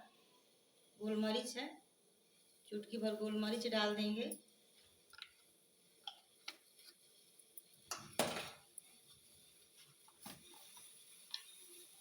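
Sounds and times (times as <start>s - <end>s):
faint steady hiss: 0.0s - 12.0s
kitchen utensils clinking: 7.9s - 8.6s.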